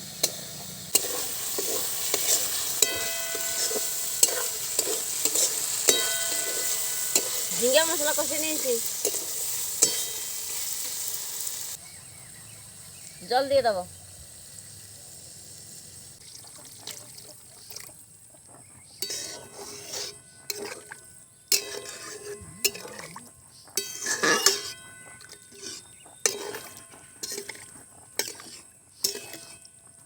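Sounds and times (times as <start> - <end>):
vessel clinking: 1.0 - 8.2, 20.4 - 29.8
water splashing into pan: 1.0 - 11.8.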